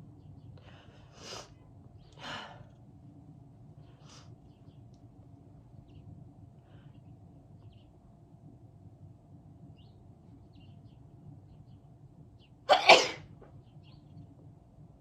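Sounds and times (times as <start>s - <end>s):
faint steady hum: 0.0s - 15.0s
person sneezing: 12.7s - 13.2s.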